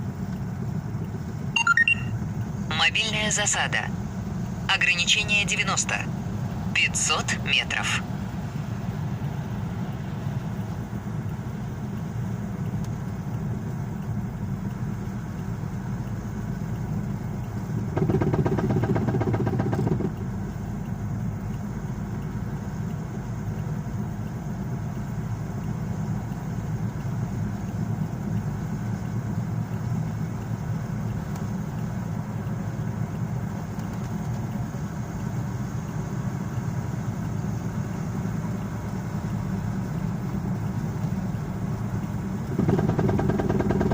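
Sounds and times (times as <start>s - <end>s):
car road and engine noise: 0.0s - 43.9s
loose wheel knocking: 17.4s - 20.3s, 42.4s - 43.9s.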